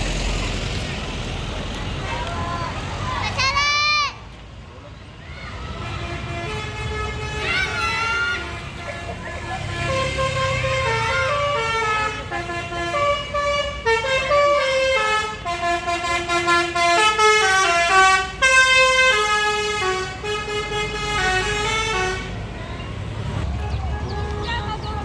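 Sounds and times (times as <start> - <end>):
low engine rumble: 0.0 - 3.7, 4.3 - 25.0
multi-tone bus horn melody: 5.8 - 25.0.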